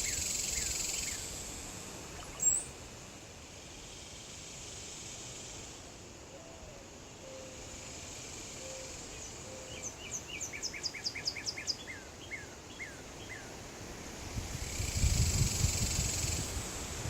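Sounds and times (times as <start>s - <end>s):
breeze hiss: 0.0s - 6.2s, 7.5s - 10.4s, 13.5s - 17.0s
songbird whistling: 2.2s - 2.7s.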